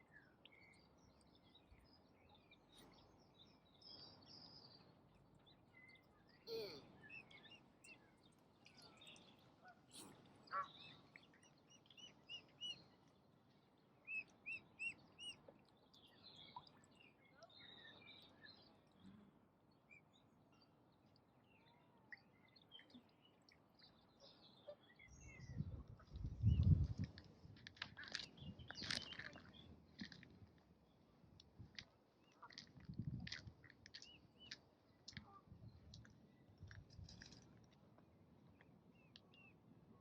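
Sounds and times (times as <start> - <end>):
bird chirping: 0.0 - 26.9.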